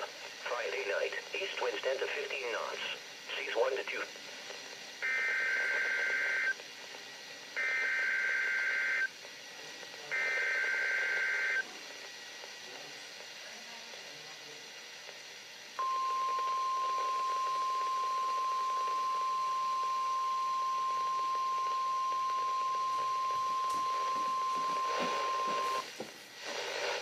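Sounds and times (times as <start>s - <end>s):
faint radio hiss: 0.0s - 27.0s
steady alarm tone: 15.8s - 25.9s.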